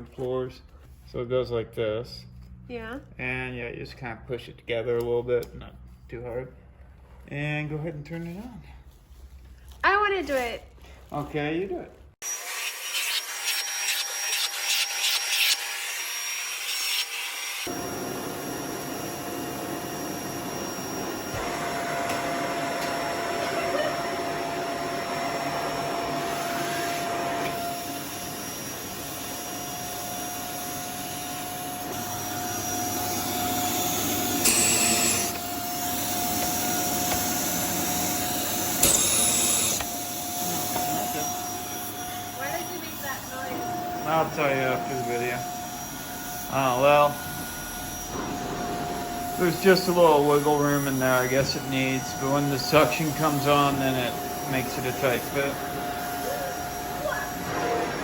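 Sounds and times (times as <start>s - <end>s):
vacuum cleaner running: 15.4s - 58.0s
vacuum cleaner whine: 15.4s - 58.0s.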